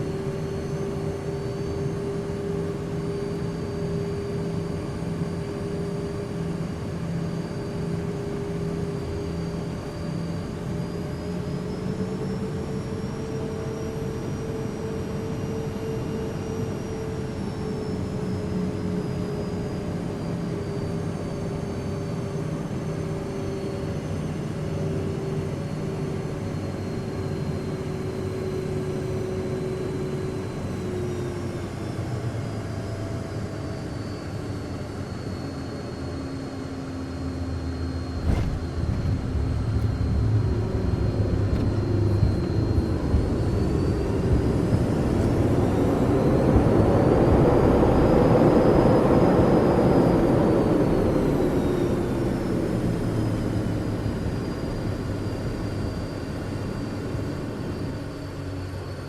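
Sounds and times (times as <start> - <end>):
jet engines whining: 0.0 - 59.0
low rumble: 38.1 - 49.3.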